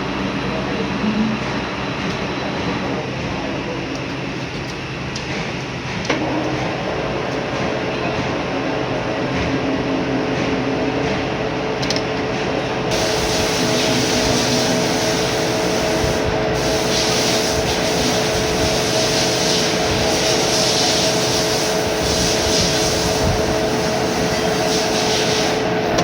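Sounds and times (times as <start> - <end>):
cutting hiss: 12.9 - 25.7.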